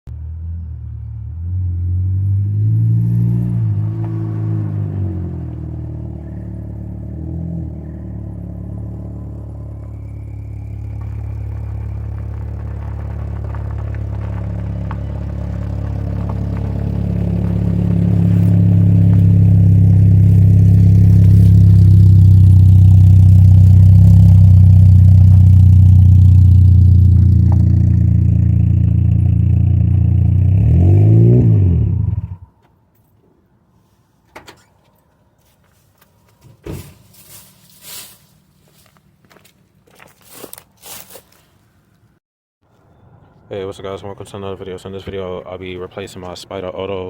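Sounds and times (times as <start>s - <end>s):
car engine running: 3.3s - 32.4s.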